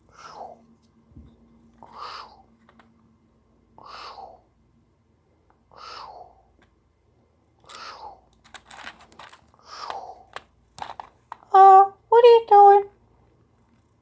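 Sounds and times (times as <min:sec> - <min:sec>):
person breathing heavily: 0:03.8 - 0:04.5, 0:05.7 - 0:06.6.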